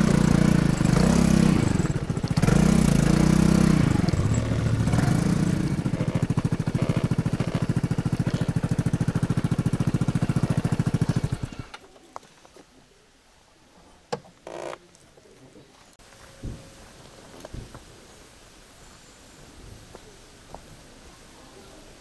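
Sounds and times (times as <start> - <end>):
scooter engine idling: 0.0 - 11.8.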